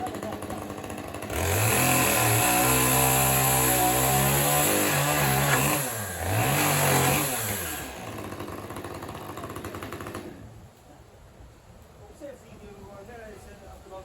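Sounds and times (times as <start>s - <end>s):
chainsaw revving and idling: 0.0s - 10.5s.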